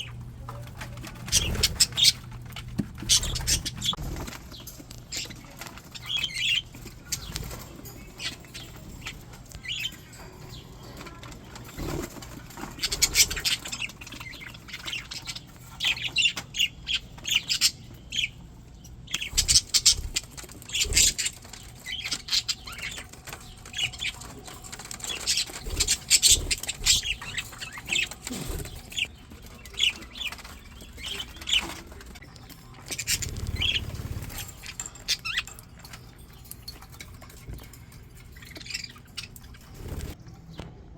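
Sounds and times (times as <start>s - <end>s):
budgies chirping and squawking: 0.0s - 40.7s
wing flapping: 32.8s - 35.3s, 39.3s - 40.2s.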